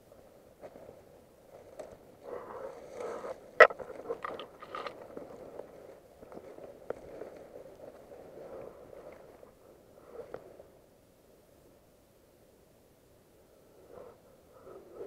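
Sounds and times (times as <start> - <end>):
crunching and scraping: 1.5 - 8.2.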